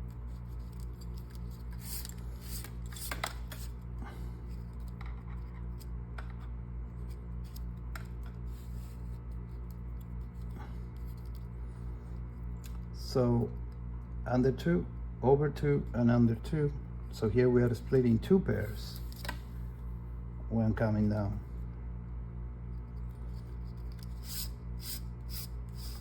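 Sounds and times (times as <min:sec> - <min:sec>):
string scraping and rustling: 0:00.0 - 0:05.9, 0:06.9 - 0:12.8, 0:22.7 - 0:26.0
steady low hum: 0:00.0 - 0:26.0.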